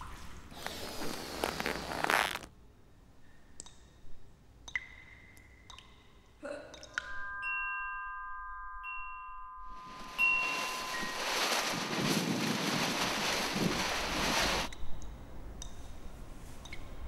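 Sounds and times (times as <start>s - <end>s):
chime-like struck notes: 7.0s - 11.7s
bell-like tones: 7.0s - 12.0s.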